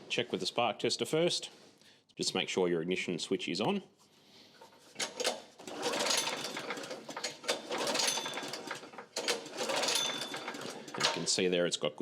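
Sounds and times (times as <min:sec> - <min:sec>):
recoil starter pulls: 0:05.0 - 0:11.4
engine spinning with mechanical rattle: 0:05.1 - 0:11.3.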